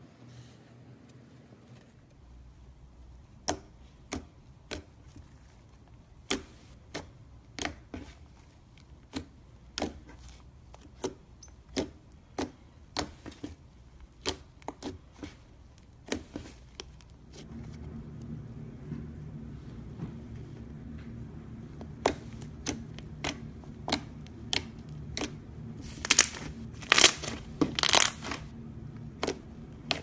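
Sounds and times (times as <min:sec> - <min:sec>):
low hum: 0:17.3 - 0:30.0.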